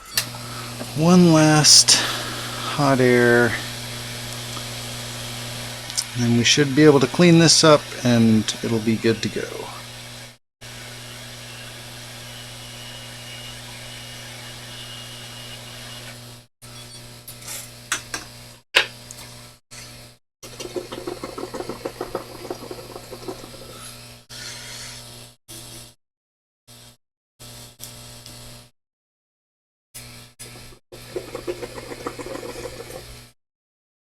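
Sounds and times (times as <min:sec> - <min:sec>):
hot air station blowing: 0:00.0 - 0:16.2, 0:20.5 - 0:23.9, 0:31.0 - 0:33.1.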